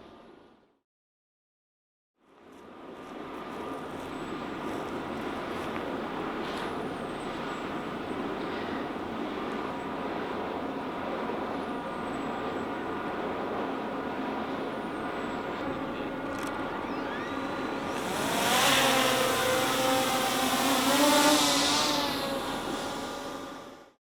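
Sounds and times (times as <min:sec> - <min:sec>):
vehicle engine humming: 0:14.8 - 0:24.0.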